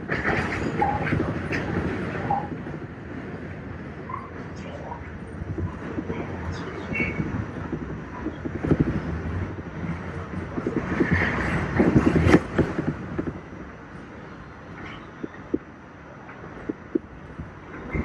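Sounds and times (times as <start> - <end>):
subway train wheels clattering: 0.0 - 18.0.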